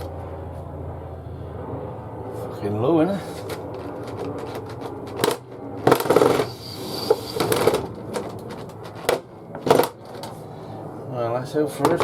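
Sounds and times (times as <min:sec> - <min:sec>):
wooden and metal parts clattering: 0:07.4 - 0:10.4.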